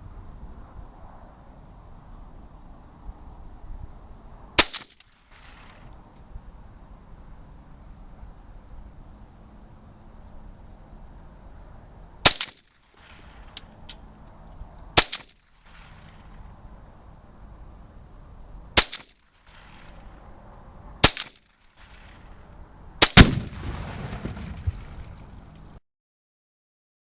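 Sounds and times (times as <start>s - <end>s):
rifle shots cracking: 4.6s - 5.8s, 12.2s - 13.4s, 15.0s - 16.1s, 18.8s - 20.0s, 21.0s - 21.4s, 23.0s - 25.6s
target explosion bang: 23.2s - 25.4s.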